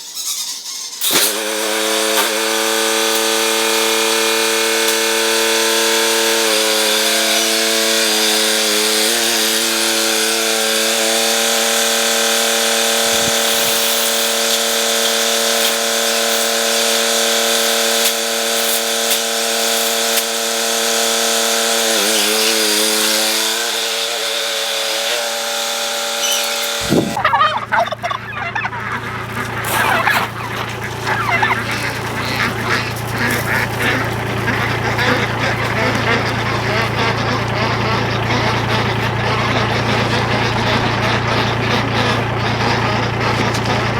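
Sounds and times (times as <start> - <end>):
motor humming: 0.0 - 43.9
poultry calling and honking: 5.5 - 19.9, 20.5 - 43.9
scuffling noise: 28.7 - 37.0.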